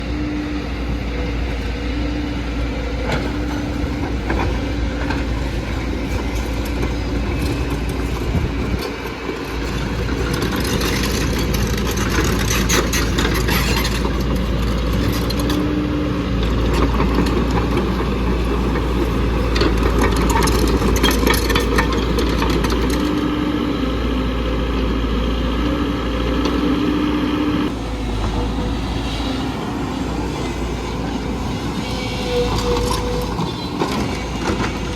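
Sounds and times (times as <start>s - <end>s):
excavator diesel engine: 0.0s - 34.9s
hydraulic whine: 0.0s - 34.9s
clattering and scraping: 3.0s - 15.7s, 16.4s - 23.3s, 28.2s - 34.9s.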